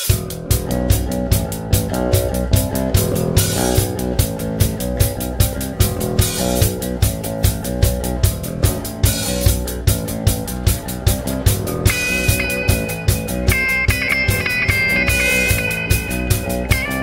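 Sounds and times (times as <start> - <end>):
drum kit beat: 0.0 - 17.0
rock band playing live: 0.0 - 17.0.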